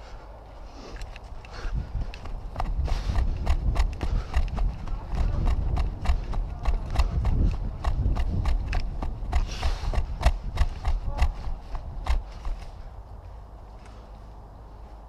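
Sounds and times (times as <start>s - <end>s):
footsteps walking: 0.0s - 15.0s
sharp clicks: 0.9s - 12.7s.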